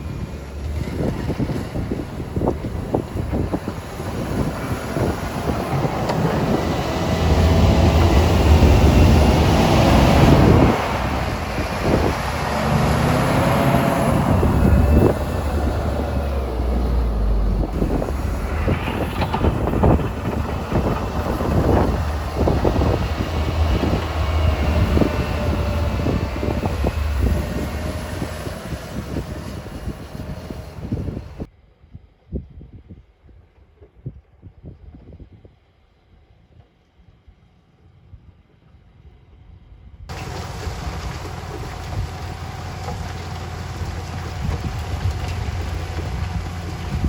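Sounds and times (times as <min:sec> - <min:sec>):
diesel machinery engine running: 0:00.0 - 0:31.5, 0:40.1 - 0:47.0
knocks and clatter: 0:17.4 - 0:31.4.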